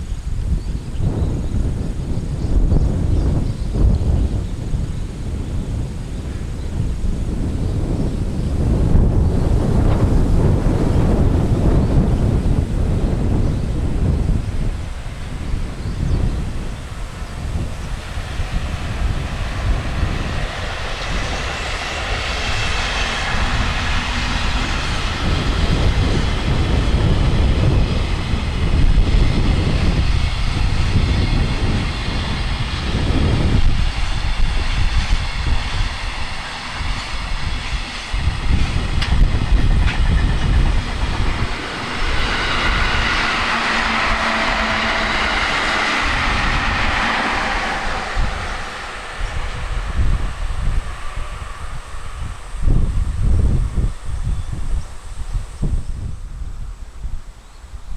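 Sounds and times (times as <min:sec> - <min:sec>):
freight train rumbling past: 0:00.0 - 0:57.9
wheels clattering over rail joints: 0:36.8 - 0:51.9.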